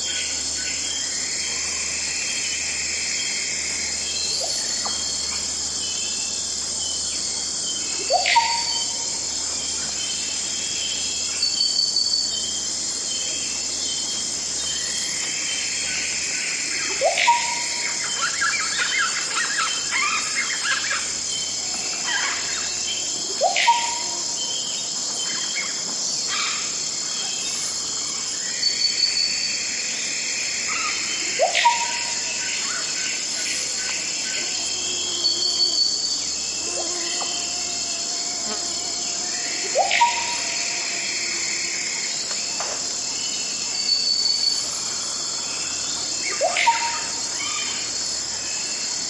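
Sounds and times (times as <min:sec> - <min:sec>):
insects chorus: 0:00.0 - 0:49.0.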